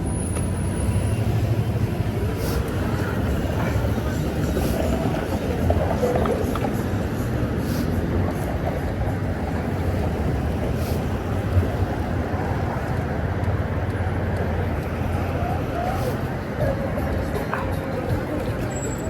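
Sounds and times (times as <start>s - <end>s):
low rumble of moving vehicle: 0.0s - 19.0s.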